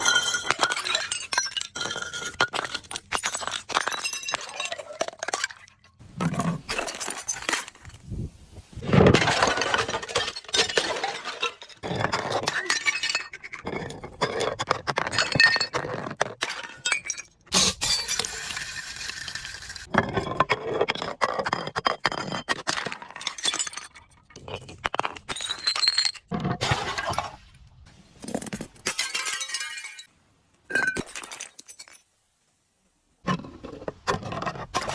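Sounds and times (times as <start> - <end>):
glass bottles shattering: 0.0 - 8.0, 9.0 - 14.0, 16.4 - 20.2, 22.1 - 24.2, 25.1 - 27.4, 28.4 - 32.1
glass shards clinking: 28.8 - 30.1.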